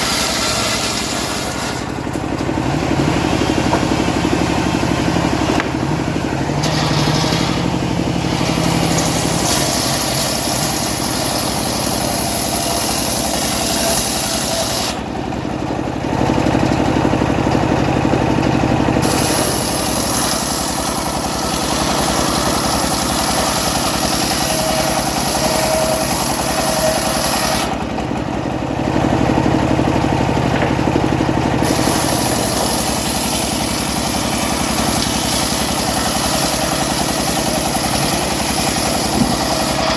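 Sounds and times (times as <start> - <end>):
engine running: 0.0 - 39.9
saw high hiss: 6.4 - 15.0, 31.6 - 39.9.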